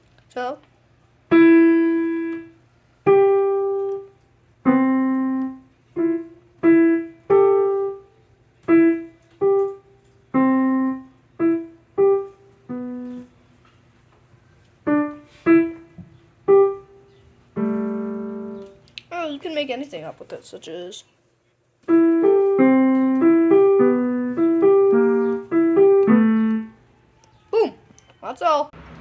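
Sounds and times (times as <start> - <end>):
piano chime melody: 17.6 - 18.8, 22.0 - 26.8.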